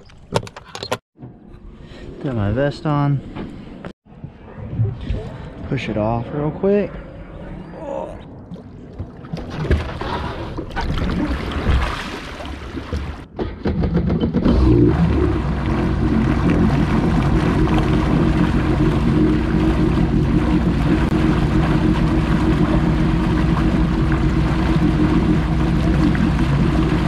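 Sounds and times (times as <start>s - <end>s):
jet ski engine running: 14.2s - 27.0s.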